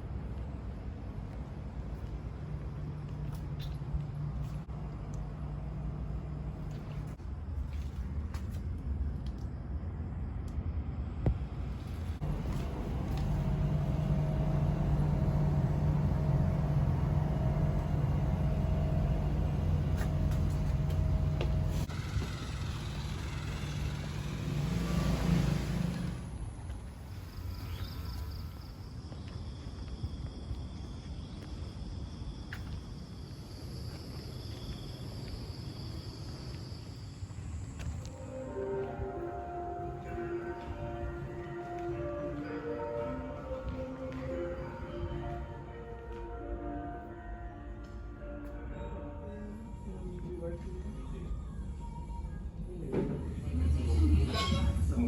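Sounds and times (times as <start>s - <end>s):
low mechanical drone: 10.3s - 29.4s, 48.5s - 55.0s
low rumble on microphone: 11.1s - 21.9s
faint high whine: 11.2s - 55.0s
insects chirring: 26.3s - 38.4s.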